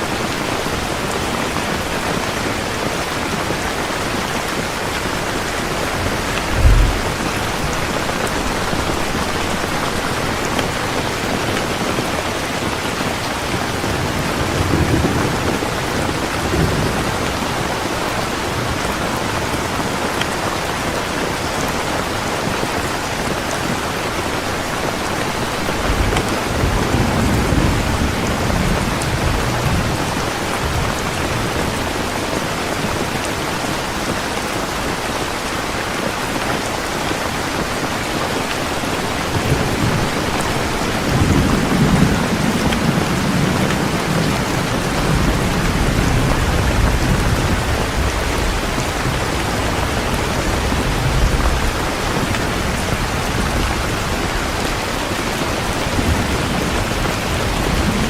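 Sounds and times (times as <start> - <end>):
steady rain: 0.0 - 58.0
rolling thunder: 4.5 - 11.0.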